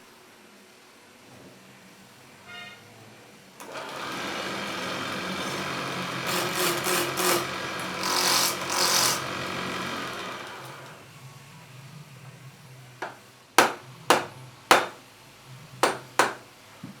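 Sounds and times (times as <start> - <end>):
lathe motor running: 3.6 - 11.0
tool cutting spinning wood: 3.6 - 11.0.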